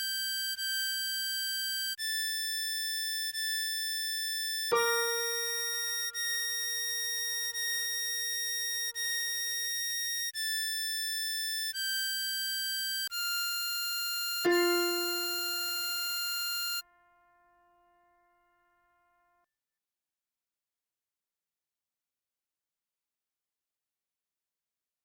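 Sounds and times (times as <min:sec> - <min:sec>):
harmonica melody: 0:04.7 - 0:10.4, 0:11.8 - 0:17.2.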